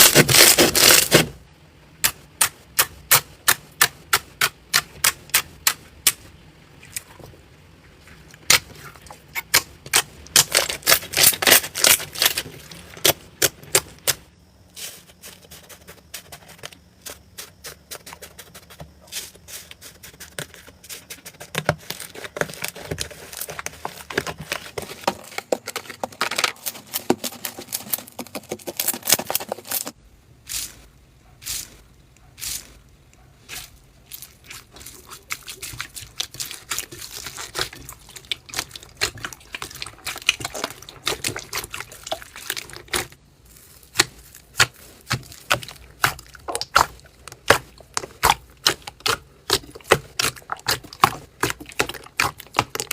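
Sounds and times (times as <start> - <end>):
slime crackling: 0.0 - 1.2, 8.4 - 14.1, 33.4 - 52.9.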